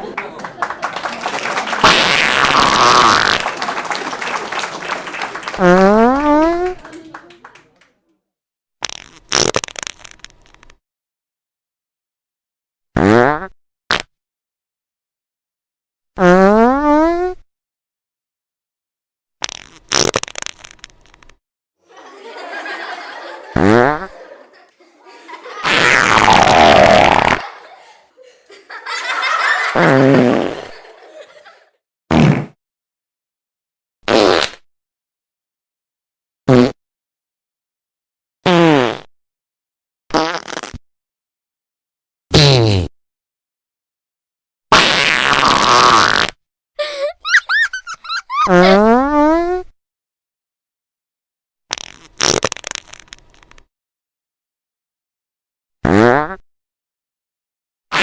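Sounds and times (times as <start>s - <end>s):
laughter: 0.0s - 7.8s, 21.9s - 31.7s, 46.8s - 48.8s
fart sound effects: 0.9s - 7.6s, 8.8s - 9.9s, 13.0s - 14.1s, 19.4s - 20.7s, 23.5s - 24.1s, 25.6s - 27.5s, 29.7s - 30.8s, 32.1s - 32.6s, 34.1s - 34.6s, 36.5s - 36.8s, 38.5s - 39.0s, 40.2s - 40.8s, 44.7s - 46.3s, 51.7s - 53.1s, 55.8s - 56.4s.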